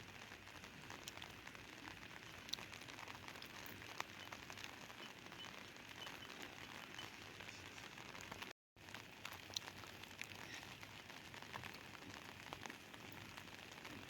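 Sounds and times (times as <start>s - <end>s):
rain pattering: 0.0s - 14.0s.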